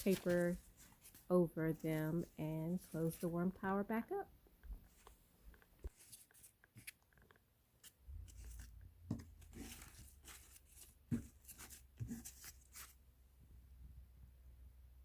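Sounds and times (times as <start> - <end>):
damp paper rustling: 0.0 - 3.4, 8.2 - 13.0.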